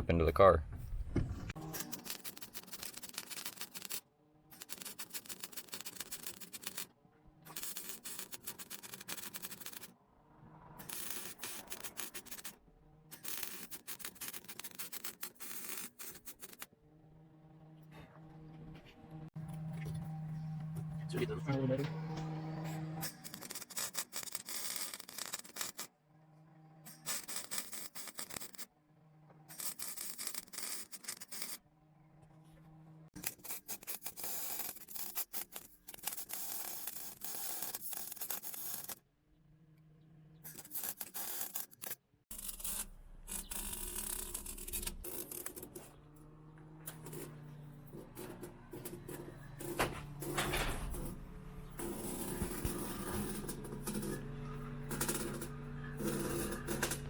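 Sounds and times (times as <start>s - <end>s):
welding crackle: 1.6s - 4.0s, 4.6s - 6.9s, 7.5s - 9.9s, 10.8s - 16.7s, 23.0s - 25.9s, 26.9s - 28.7s, 29.5s - 31.6s, 33.2s - 39.0s, 40.5s - 46.0s, 50.2s - 57.0s.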